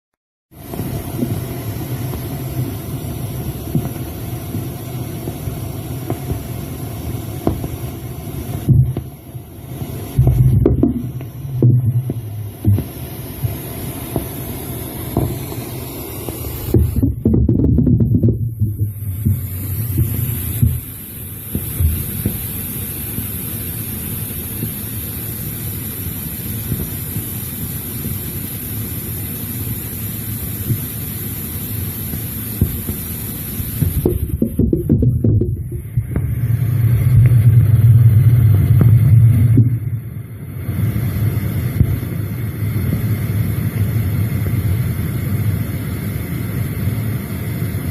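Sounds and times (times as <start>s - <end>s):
low throbbing hum: 0.6s - 22.5s, 33.8s - 47.7s
low underground rumble: 0.7s - 15.8s, 16.5s - 21.1s, 34.0s - 44.9s
thumps and bumps: 10.2s - 13.6s, 16.7s - 20.9s, 33.8s - 36.4s.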